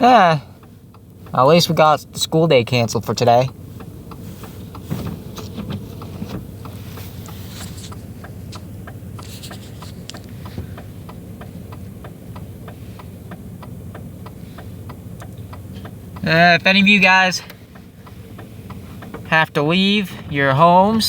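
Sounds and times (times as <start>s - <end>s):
car engine idling: 0.0s - 21.0s
rapid ticking: 6.0s - 21.0s.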